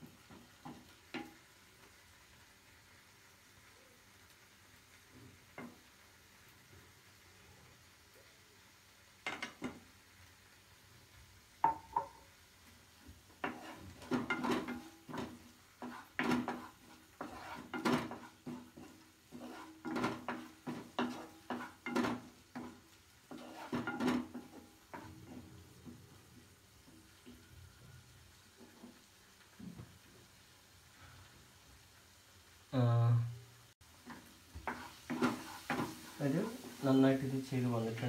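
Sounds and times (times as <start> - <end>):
spoon stirring and scraping pan: 0.0 - 2.0, 5.1 - 6.0, 9.2 - 9.9, 11.6 - 30.3, 33.8 - 38.0.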